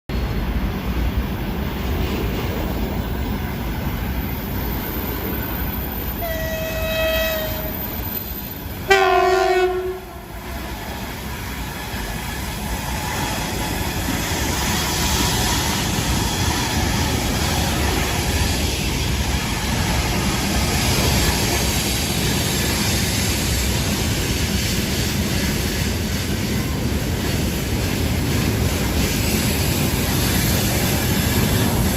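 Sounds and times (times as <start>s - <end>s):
train rumble and wheel clatter: 0.1s - 31.9s
locomotive air horn: 6.2s - 7.8s, 8.9s - 10.4s.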